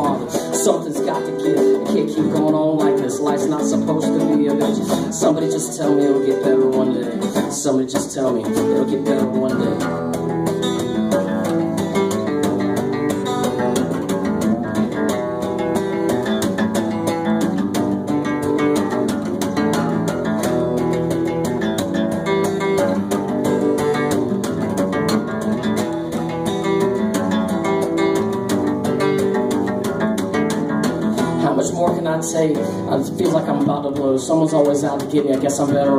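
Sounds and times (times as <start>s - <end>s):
guitar strummed with quick rhythm: 0.0s - 35.9s.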